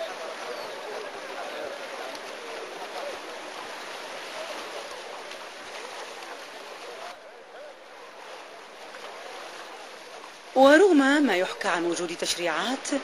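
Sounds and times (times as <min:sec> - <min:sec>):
faint distant voices: 0:00.0 - 0:10.5
steady noise like moving water: 0:00.0 - 0:13.0.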